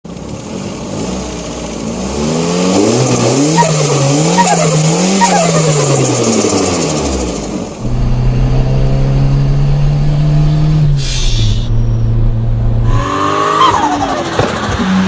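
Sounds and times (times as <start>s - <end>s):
car engine revving: 0.2s - 15.0s.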